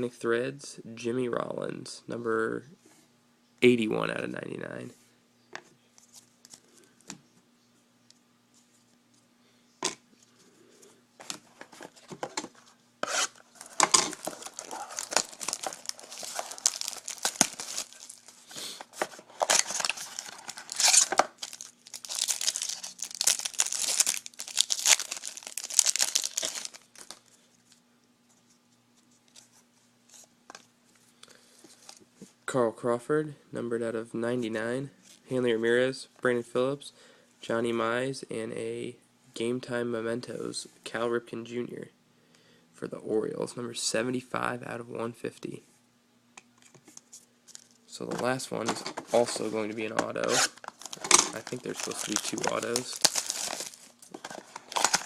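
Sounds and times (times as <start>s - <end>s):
wrapper tearing and crinkling: 13.0s - 27.3s, 50.2s - 55.0s.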